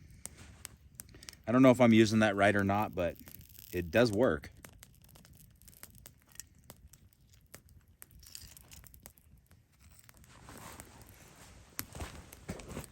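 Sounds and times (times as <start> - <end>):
soft rustle: 0.0 - 1.5, 8.2 - 12.9
paper burning crackles: 0.0 - 12.9.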